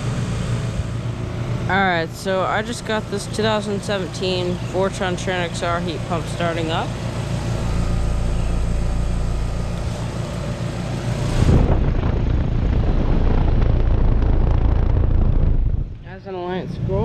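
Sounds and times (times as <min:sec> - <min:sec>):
heat pump compressor humming: 0:00.0 - 0:17.0
low rushing noise: 0:05.3 - 0:17.0.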